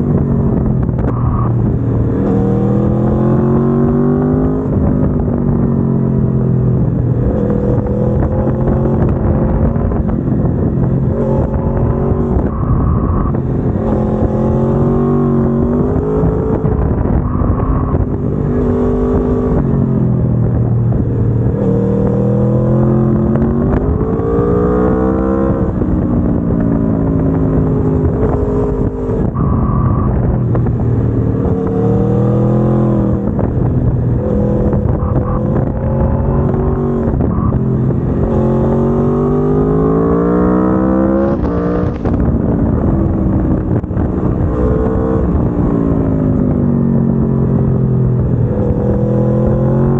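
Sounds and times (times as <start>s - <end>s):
motorcycle engine revving: 0.0s - 49.9s.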